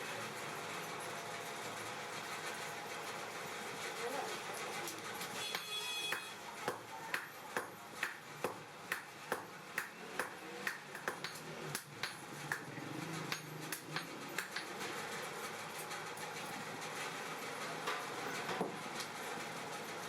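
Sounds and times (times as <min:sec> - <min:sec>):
hammer striking hot steel: 0:05.3 - 0:15.2, 0:17.8 - 0:19.2.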